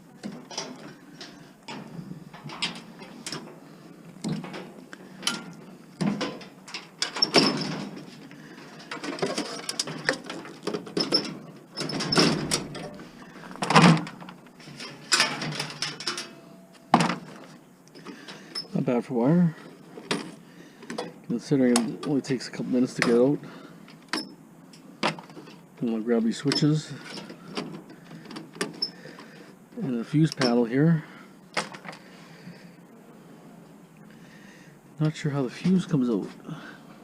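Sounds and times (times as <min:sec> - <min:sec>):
metal clattering: 0:04.3 - 0:17.4.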